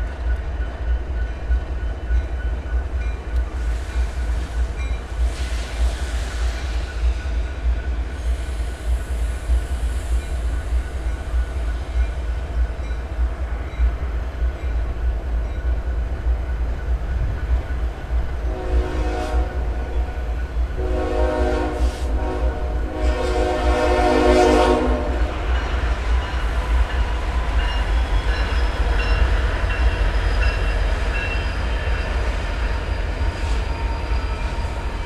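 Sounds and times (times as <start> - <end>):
train rumbling: 0.0 - 35.0
locomotive air horn: 18.4 - 25.6.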